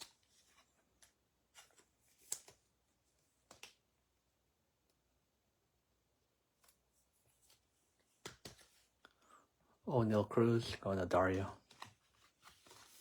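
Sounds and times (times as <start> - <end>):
trading cards clicking and rustling: 3.4 - 3.8, 7.4 - 8.9.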